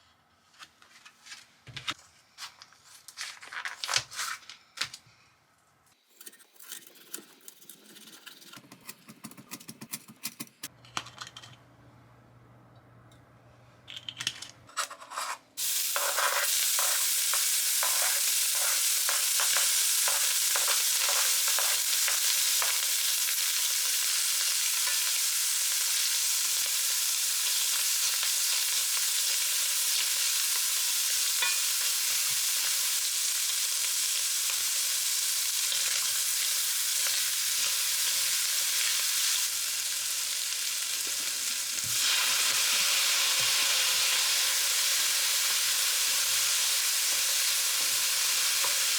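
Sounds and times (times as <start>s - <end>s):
spatula scraping a pan: 14.8s - 21.8s
food sizzling in a frying pan: 15.6s - 48.9s.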